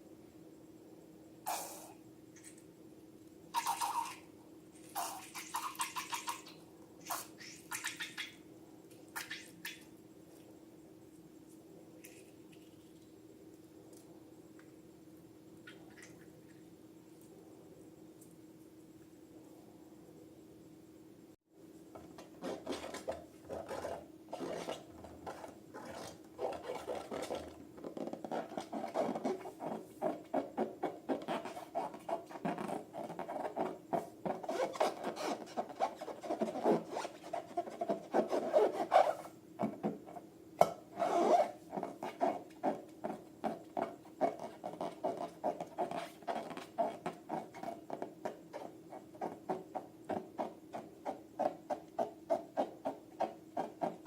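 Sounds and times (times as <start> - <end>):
faint hum: 0.0 - 54.0
hands rubbing balloons and slime: 22.2 - 39.3, 41.2 - 54.0.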